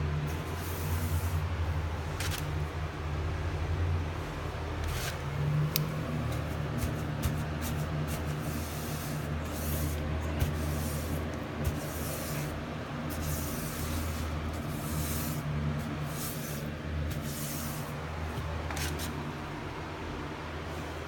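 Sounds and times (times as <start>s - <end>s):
steady low hum: 0.0s - 21.0s
paintbrush swishing on wood: 0.2s - 1.4s, 6.0s - 19.2s.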